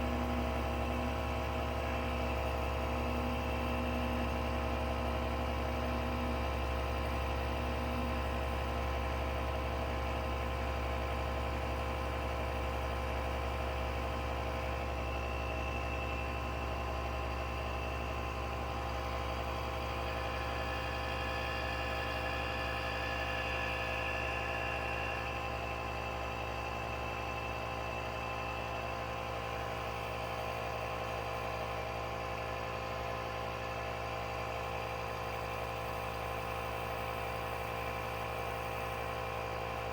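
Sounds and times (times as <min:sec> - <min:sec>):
car engine idling: 0:00.0 - 0:39.9
faint high whine: 0:14.8 - 0:28.0.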